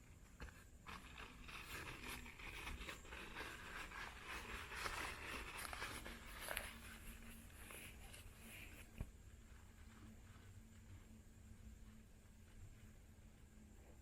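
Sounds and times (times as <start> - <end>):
tent fabric rustling and scraping: 0.0 - 13.0.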